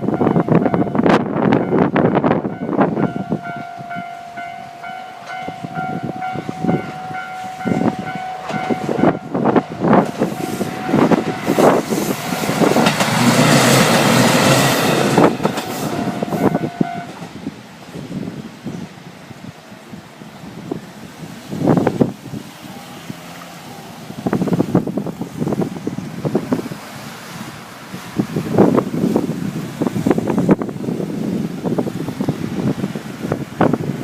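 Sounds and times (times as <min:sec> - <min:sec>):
level crossing warning bell: 0:00.0 - 0:11.6, 0:15.2 - 0:17.3
diesel train passing: 0:00.0 - 0:34.0
train wheels clattering: 0:03.6 - 0:17.4.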